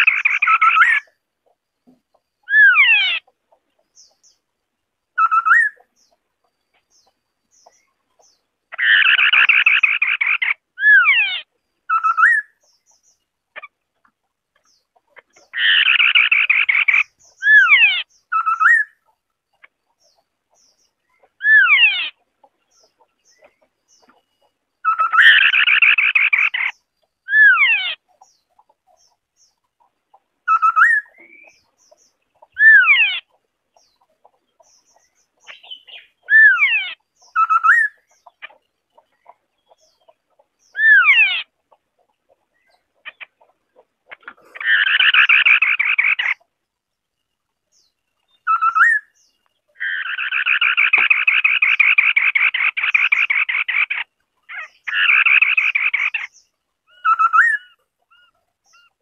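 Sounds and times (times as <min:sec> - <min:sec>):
bird calling downward notes: 0:56.9 - 0:59.0.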